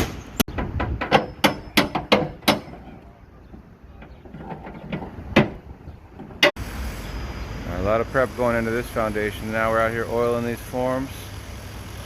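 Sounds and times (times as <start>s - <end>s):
hammer blows: 0.0s - 6.6s.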